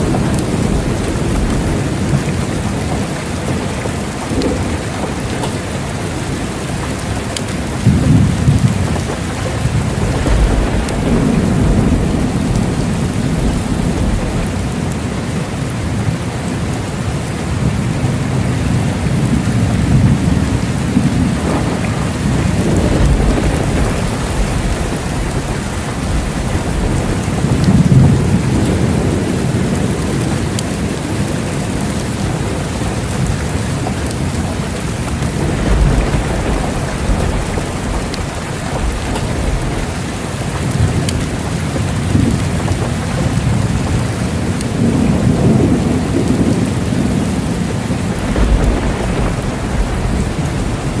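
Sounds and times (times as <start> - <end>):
heavy rain: 0.0 - 51.0
thunder rumbling: 0.0 - 51.0.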